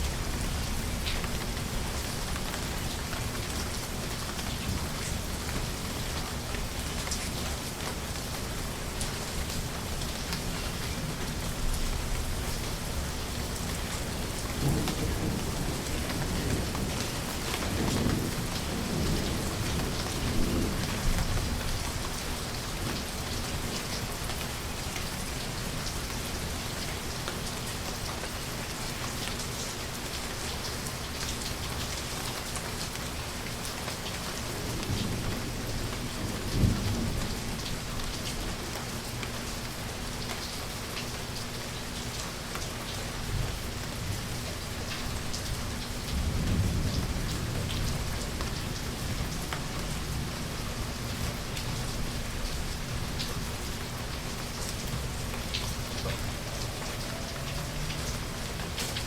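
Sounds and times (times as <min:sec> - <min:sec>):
steady rain falling: 0:00.0 - 0:59.0
thunder rumbling: 0:13.8 - 0:23.7, 0:45.0 - 0:54.2.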